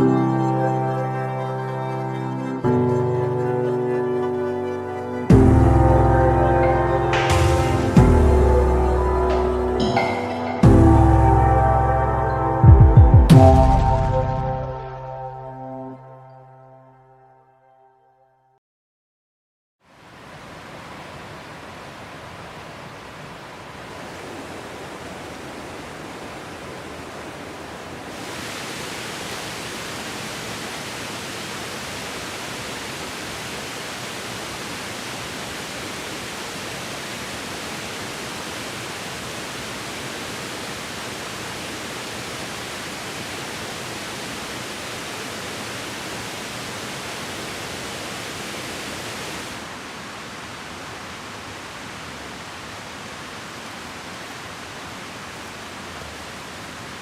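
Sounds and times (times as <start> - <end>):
heavy rain hissing: 5.8 - 11.4, 27.7 - 57.0.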